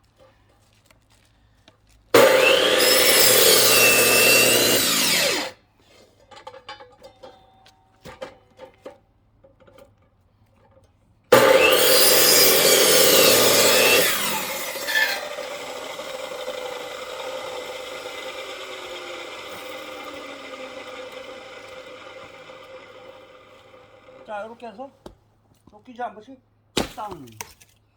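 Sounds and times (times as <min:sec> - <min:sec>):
power saw cutting log: 0:02.2 - 0:05.6, 0:11.3 - 0:24.6.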